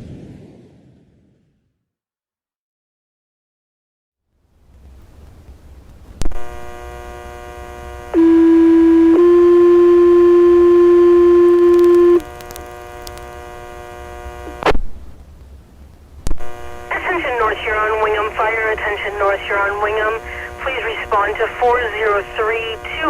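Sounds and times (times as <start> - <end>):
radio hum: 6.4 - 14.8, 16.4 - 23.0
two-tone radio paging alert: 8.2 - 12.2
radio click: 11.5 - 13.4.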